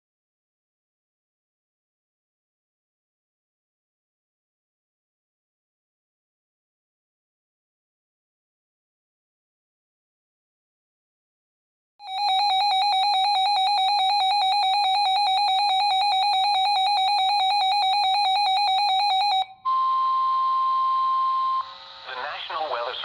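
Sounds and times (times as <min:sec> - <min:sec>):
pulsing electronic alarm beep: 0:12.0 - 0:22.0
steady warning tone: 0:12.0 - 0:22.4.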